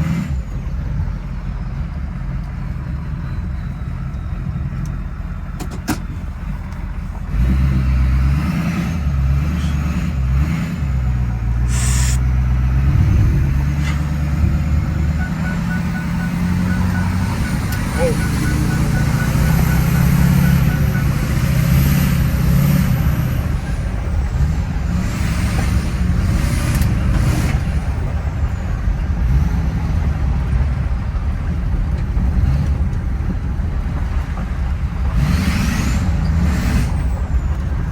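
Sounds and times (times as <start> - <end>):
diesel engine low rumble: 0.0 - 37.9
turbo whistle: 11.7 - 12.2, 14.9 - 21.8.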